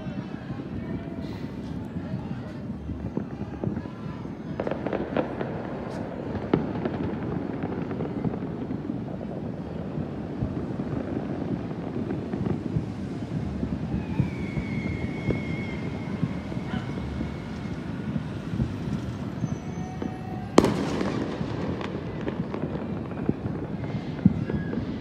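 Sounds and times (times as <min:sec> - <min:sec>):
fireworks crackling and banging: 0:00.0 - 0:25.0
steady whistling tone: 0:13.7 - 0:20.8.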